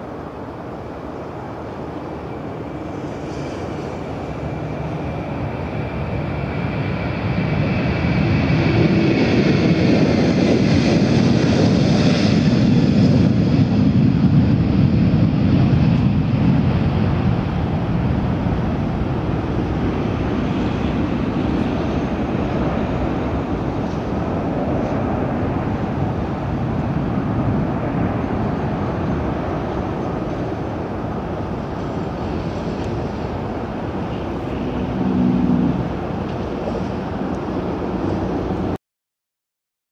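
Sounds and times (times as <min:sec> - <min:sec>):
jet engines with high whine: 0:00.0 - 0:38.8.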